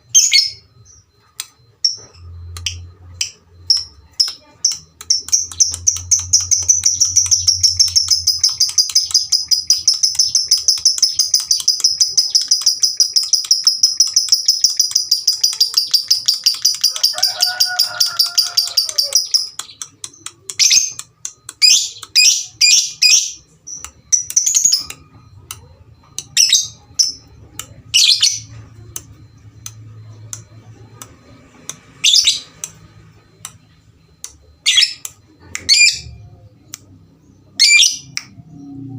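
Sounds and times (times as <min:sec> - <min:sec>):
lovebird trilling and chirping: 0:03.7 - 0:25.0.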